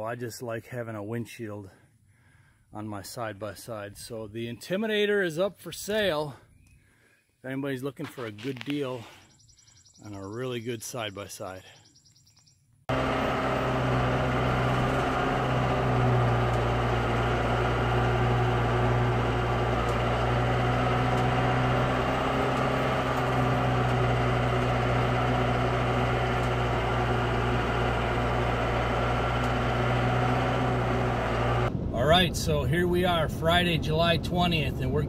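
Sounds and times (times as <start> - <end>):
engine idling: 12.9 - 31.7.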